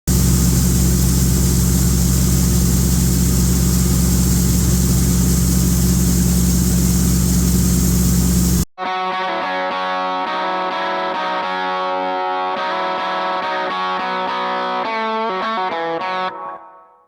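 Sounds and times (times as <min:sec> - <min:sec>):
farm machine engine running: 0:00.1 - 0:08.7.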